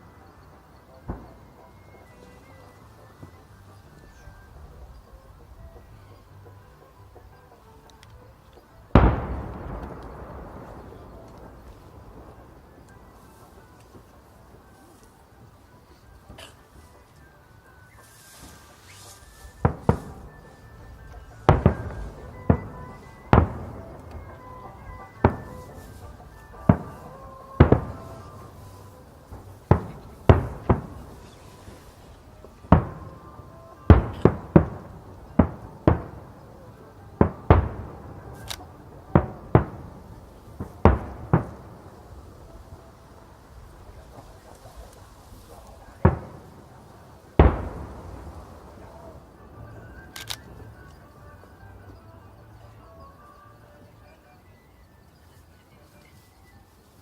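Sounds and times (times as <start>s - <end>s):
faint music: 0.0s - 57.0s
firework shells booming: 0.9s - 2.6s, 8.8s - 15.4s, 19.0s - 51.5s.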